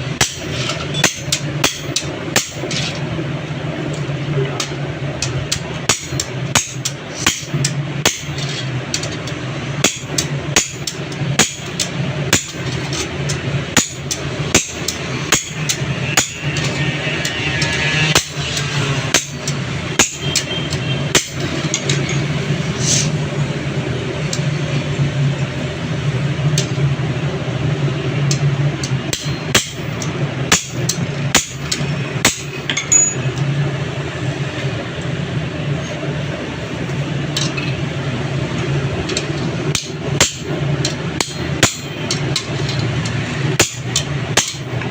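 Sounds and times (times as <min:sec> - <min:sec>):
steady low hum: 0:00.0 - 0:44.9
hammer blows on metal: 0:13.8 - 0:21.8.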